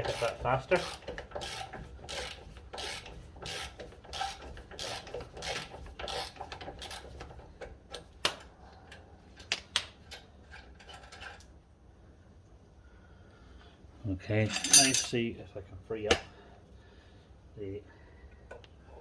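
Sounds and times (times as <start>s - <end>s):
hand ratchet rasping: 0.0s - 8.0s
sharp metallic clinks: 14.5s - 15.2s.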